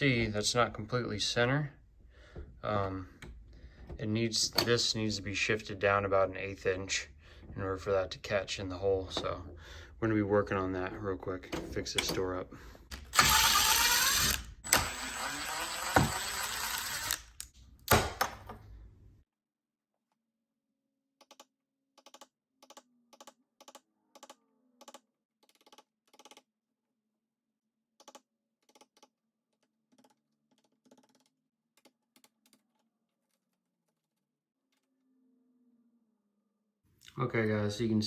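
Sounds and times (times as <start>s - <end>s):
screwdriver scraping wood: 12.9s - 17.5s.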